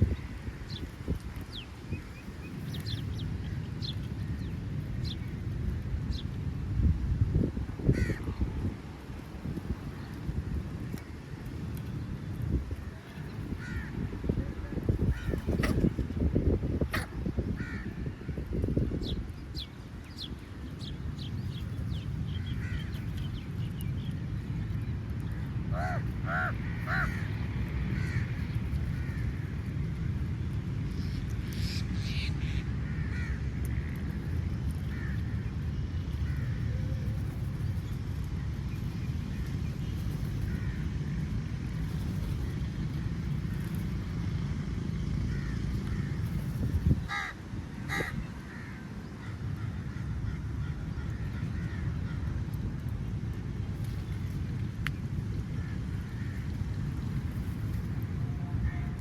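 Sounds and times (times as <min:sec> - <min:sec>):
steady low rumble: 0:00.0 - 0:59.0
crows cawing: 0:07.9 - 0:08.2, 0:13.6 - 0:14.0, 0:17.0 - 0:17.9, 0:25.7 - 0:27.3, 0:28.0 - 0:28.3, 0:32.9 - 0:33.4, 0:47.1 - 0:49.4
faint bird calls: 0:25.7 - 0:27.3, 0:47.0 - 0:52.3.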